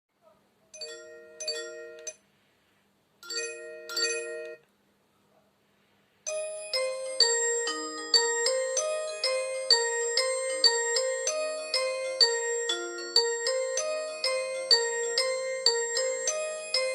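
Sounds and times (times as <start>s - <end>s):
phone ringtone melody: 0.8s - 2.2s, 3.2s - 4.6s, 6.3s - 16.9s
phone chime alert tones: 3.2s - 4.6s, 6.3s - 16.9s.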